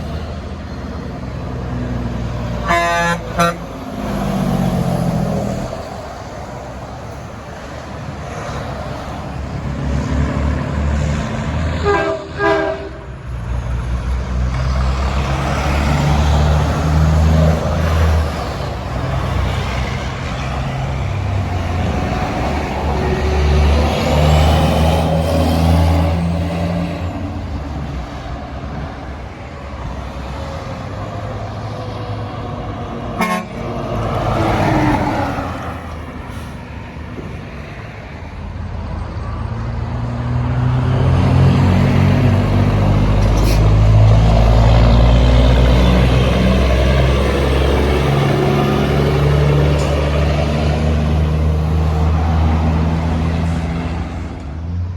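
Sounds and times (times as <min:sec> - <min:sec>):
diesel trucks passing: 0:00.0 - 0:54.9
air horn blast: 0:02.6 - 0:03.7, 0:11.8 - 0:13.1, 0:33.2 - 0:33.7.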